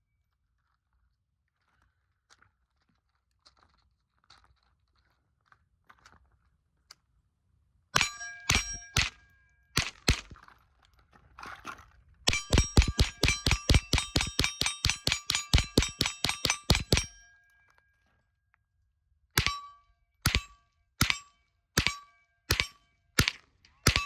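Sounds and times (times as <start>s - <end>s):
suppressed rifle shots: 8.0s - 9.1s, 9.8s - 10.4s, 12.3s - 17.2s, 19.4s - 19.6s, 20.3s - 21.2s, 21.8s - 24.0s
metallic ringing: 8.0s - 9.2s, 12.3s - 17.2s, 19.4s - 24.0s.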